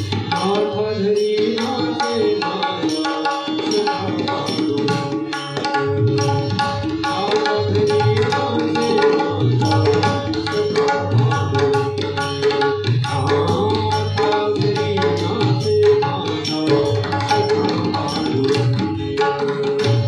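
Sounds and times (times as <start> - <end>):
hand drums playing rhythm: 0.0 - 20.0
sustained melodic accompaniment: 0.0 - 20.0.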